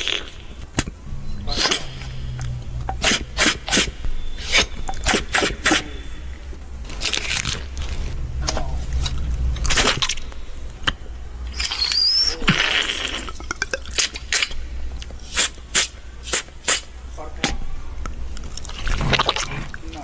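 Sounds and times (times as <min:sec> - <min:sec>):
beatbox clicks and scrapes: 0:01.5 - 0:05.9, 0:15.2 - 0:16.9
wavering whistle: 0:04.0 - 0:06.1, 0:11.5 - 0:12.5.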